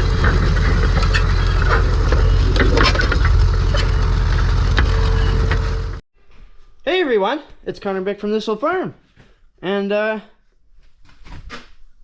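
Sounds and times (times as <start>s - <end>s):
engine rumbling: 0.0s - 6.0s.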